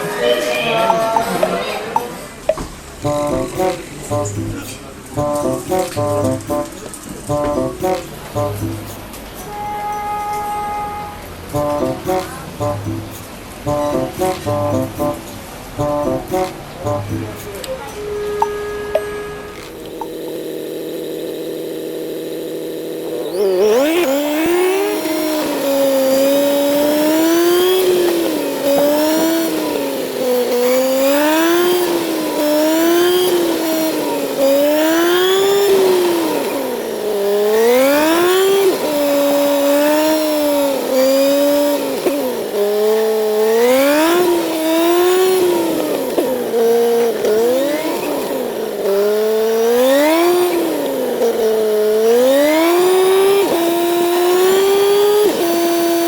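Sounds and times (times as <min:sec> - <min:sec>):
motorcycle engine revving: 0:19.5 - 0:56.0.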